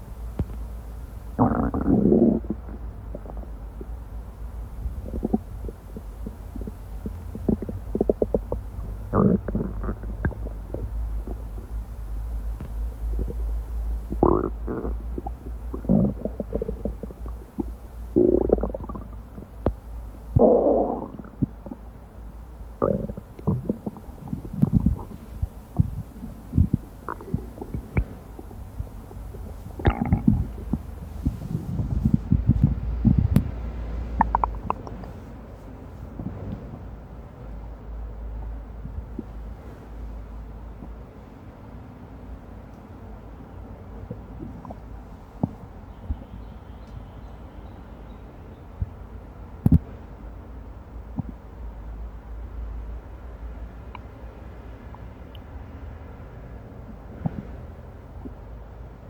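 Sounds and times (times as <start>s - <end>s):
stomach gurgling and pops: 0.0s - 22.0s, 22.7s - 35.2s, 38.8s - 39.4s, 44.0s - 46.3s, 49.6s - 49.9s, 51.2s - 51.5s, 56.9s - 58.4s
low steady rumble: 0.0s - 59.0s.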